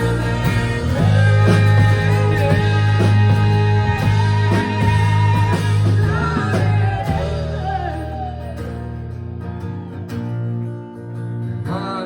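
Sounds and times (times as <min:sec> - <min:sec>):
live rock band playing: 0:00.0 - 0:11.2.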